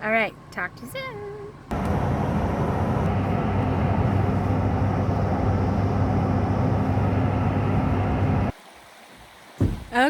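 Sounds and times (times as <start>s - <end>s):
car engine and road drone: 1.6s - 8.5s.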